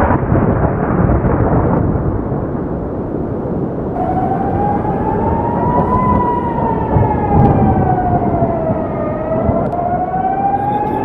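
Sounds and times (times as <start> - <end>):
loud steady rushing noise: 0.0 - 11.0
emergency alert siren wailing: 3.9 - 11.0.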